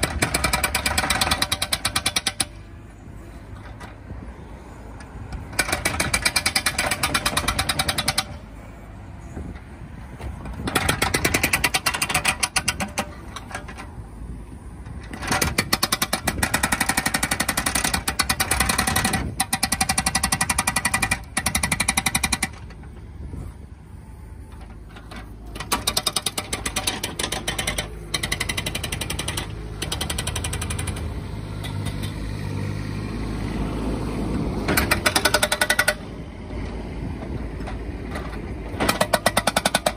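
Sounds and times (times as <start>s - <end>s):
diesel engine running: 0.0s - 39.9s
hydraulic breaker hammering: 5.5s - 8.4s, 34.7s - 36.1s, 38.7s - 39.9s.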